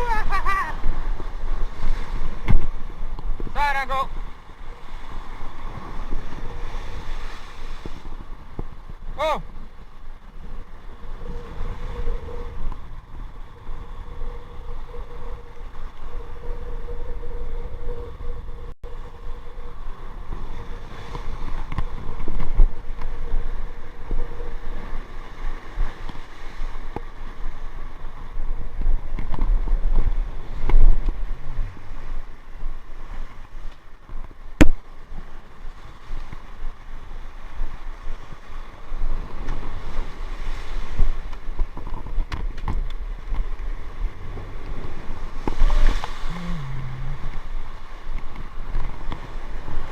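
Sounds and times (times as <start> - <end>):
wind buffeting microphone: 0.0 - 49.9
sea washing on rocks: 39.0 - 49.9
faint steady tone: 46.0 - 47.6.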